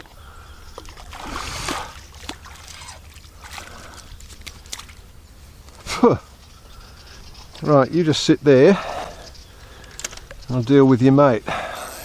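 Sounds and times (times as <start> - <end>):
water splashing and sloshing: 0.0 - 6.1
small handling clicks: 9.8 - 10.4.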